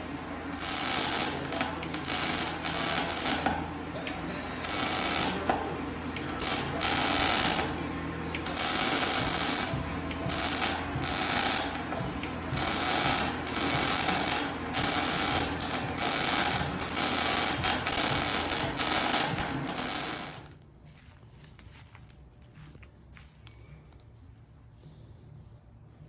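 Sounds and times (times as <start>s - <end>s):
welding arc crackling: 0.0s - 20.6s.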